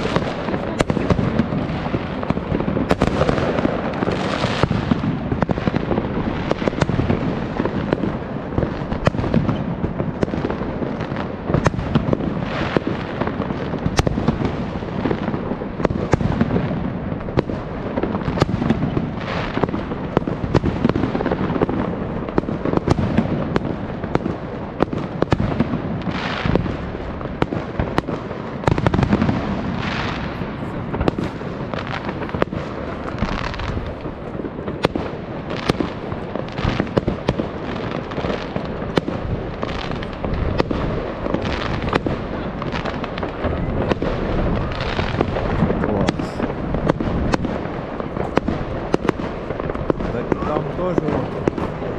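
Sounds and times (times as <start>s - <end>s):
fireworks bangs and crackles: 0.0s - 51.9s
rumble of fireworks: 0.0s - 51.9s.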